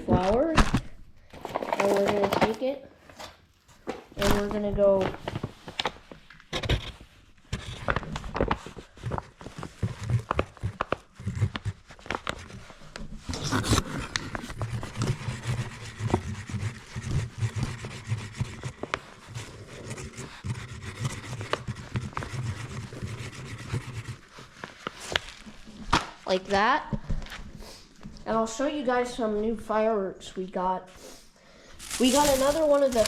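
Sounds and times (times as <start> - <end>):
flour bag rustling: 24.5 - 25.9, 31.8 - 33.0.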